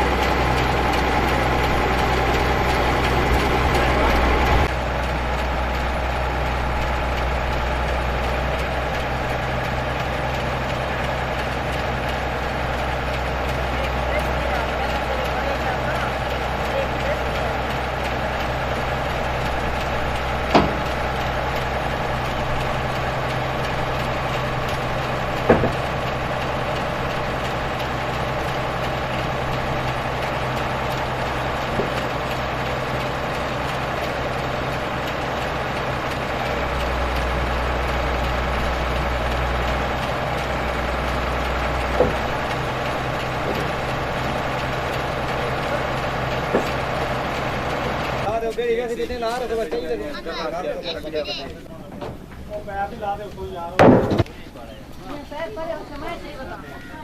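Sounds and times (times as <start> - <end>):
heavy vehicle engine idling: 0.0 - 57.0.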